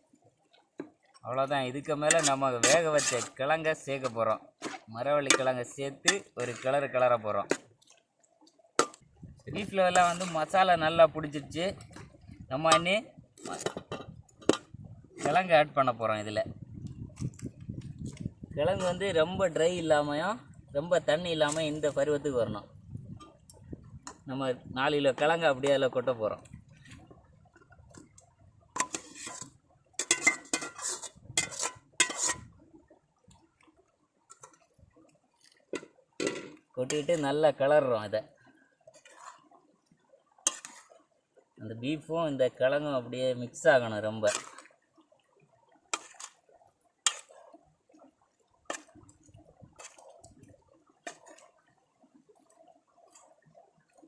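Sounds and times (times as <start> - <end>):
metal pots clanking and scraping: 1.8 - 8.0, 8.8 - 15.6, 23.1 - 24.3, 28.7 - 32.6, 35.7 - 37.4, 40.4 - 41.0, 44.3 - 44.7, 46.0 - 46.4, 47.0 - 47.5, 51.0 - 51.6
ladle scraping a pot: 2.1 - 6.8, 9.9 - 10.6, 28.8 - 32.6, 38.9 - 39.4, 40.4 - 41.0, 46.0 - 46.4
wet squelching of mash: 27.9 - 32.6, 40.4 - 41.1, 45.9 - 46.4, 48.6 - 51.6.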